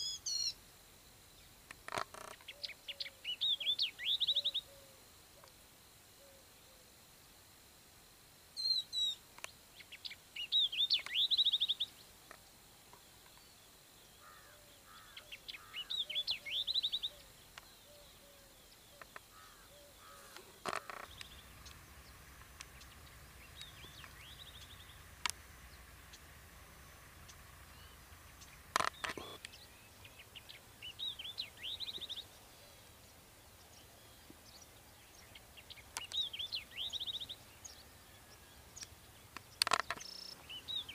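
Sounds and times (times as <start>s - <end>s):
birds chirping and trilling: 1.9s - 4.9s, 9.8s - 12.0s, 13.3s - 40.9s
low steady hum: 2.5s - 40.9s
sharp clicks: 22.4s - 25.5s, 28.4s - 29.6s.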